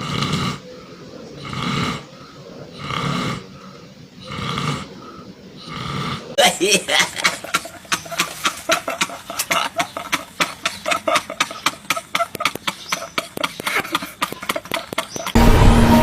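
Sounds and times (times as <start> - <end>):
music jingle: 15.4 - 16.0.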